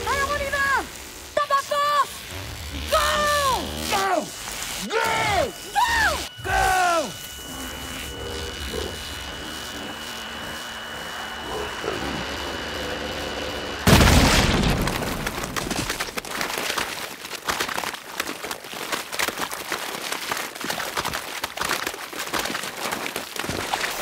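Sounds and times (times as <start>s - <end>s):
steady hum: 0.0s - 17.0s
loud explosion: 13.8s - 15.7s
scattered crackles and impacts: 13.8s - 24.0s.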